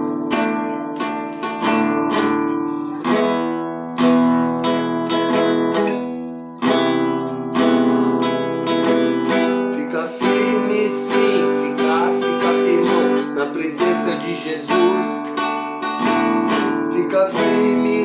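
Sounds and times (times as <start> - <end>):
acoustic guitar strumming chords: 0.0 - 18.0.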